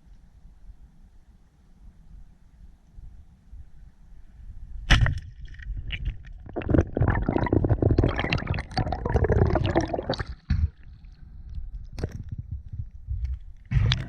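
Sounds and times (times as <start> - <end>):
water gurgling and bubbling: 5.7 - 11.1, 13.7 - 14.0
small clicks and crackles: 10.8 - 14.0.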